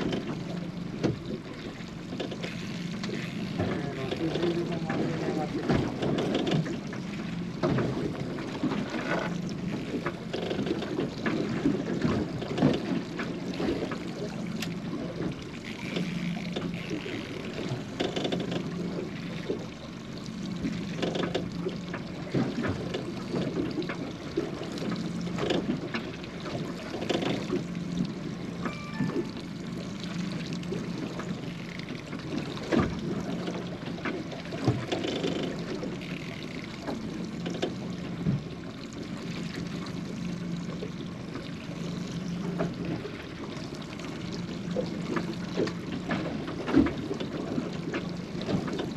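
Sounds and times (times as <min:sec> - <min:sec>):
boat engine idling: 0:00.0 - 0:48.9
water splashing against hull: 0:00.0 - 0:48.9.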